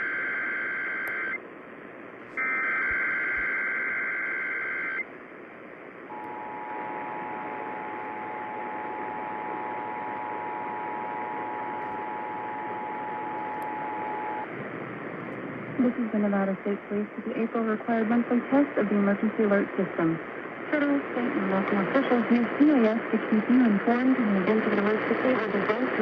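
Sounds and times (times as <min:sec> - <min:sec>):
radio hiss: 0:06.1 - 0:26.0.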